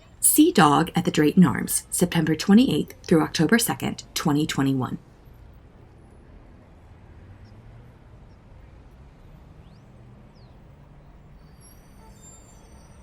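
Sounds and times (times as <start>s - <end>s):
faint hum: 0.0s - 5.2s.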